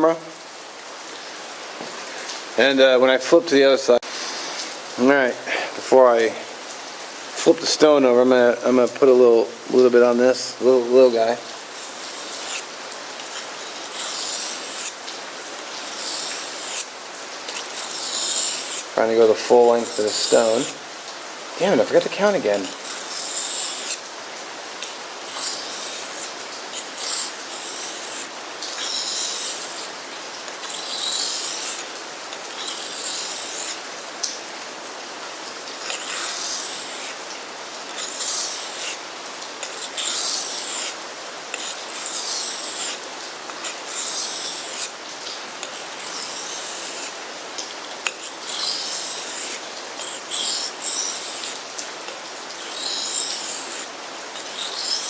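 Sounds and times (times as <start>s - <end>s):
knife scraping on sharpening stone: 11.8s - 12.6s, 13.2s - 15.0s, 15.9s - 16.9s, 17.5s - 20.7s, 22.6s - 24.0s, 24.8s - 29.9s, 30.6s - 31.8s, 32.4s - 33.8s, 35.8s - 37.2s, 37.9s - 39.0s, 39.6s - 44.9s, 45.6s - 47.1s, 48.0s - 51.6s, 52.6s - 55.0s.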